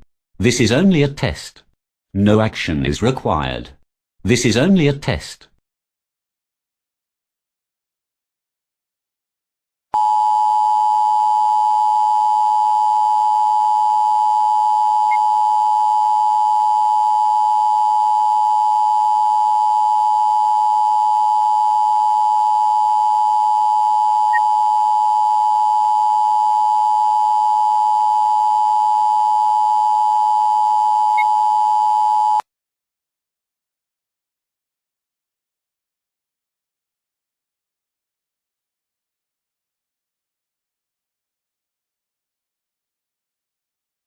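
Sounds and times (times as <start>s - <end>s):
loud steady two-tone beep: 10.0s - 32.4s.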